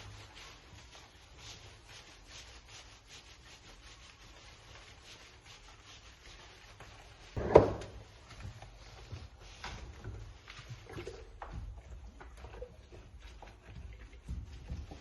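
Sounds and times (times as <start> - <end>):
faint rubbing strokes: 0.0 - 15.0
loud knock: 7.4 - 8.0.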